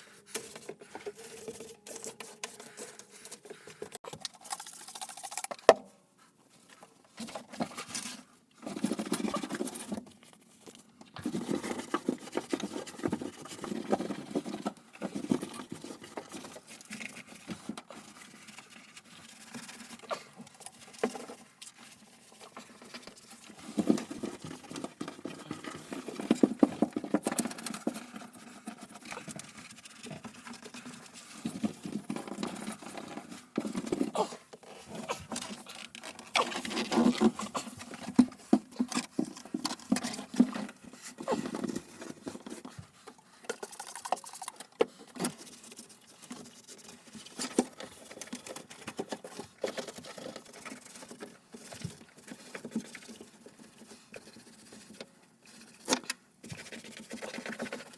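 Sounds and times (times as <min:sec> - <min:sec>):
hand work tapping and scraping: 0:00.0 - 0:04.6.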